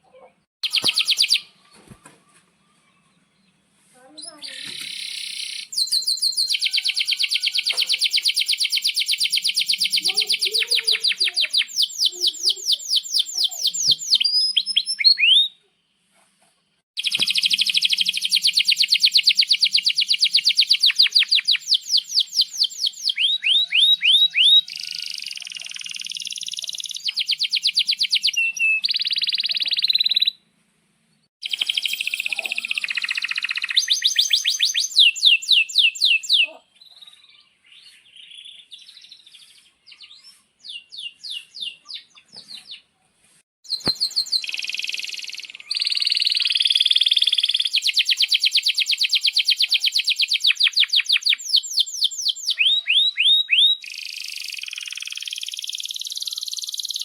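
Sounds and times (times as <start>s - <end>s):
canary singing trills: 0.1s - 1.7s, 4.2s - 15.6s, 17.0s - 30.4s, 31.4s - 42.9s, 43.7s - 57.0s.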